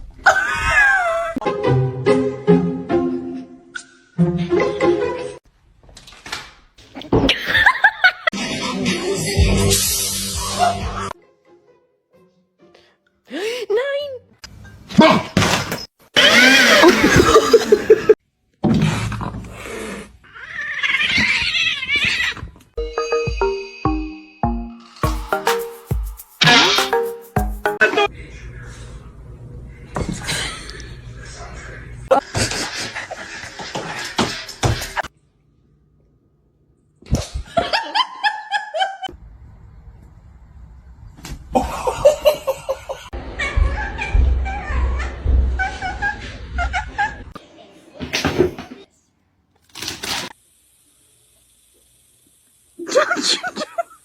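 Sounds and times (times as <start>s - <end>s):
high-pitched giggling: 16.7s - 18.2s
cat yowling: 20.3s - 22.4s.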